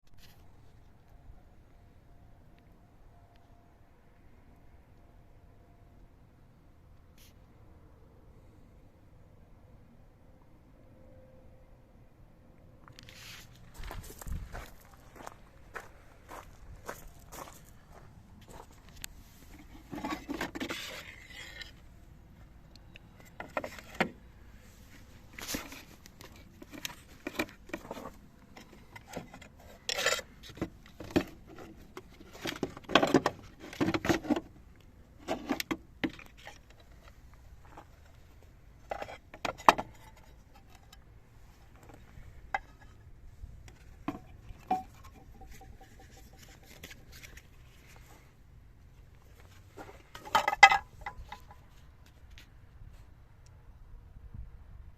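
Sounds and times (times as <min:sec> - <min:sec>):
hard objects knocking and scraping: 0:18.9 - 0:21.9, 0:23.2 - 0:24.3, 0:24.9 - 0:34.5, 0:38.8 - 0:41.1, 0:41.7 - 0:48.2, 0:49.4 - 0:51.8.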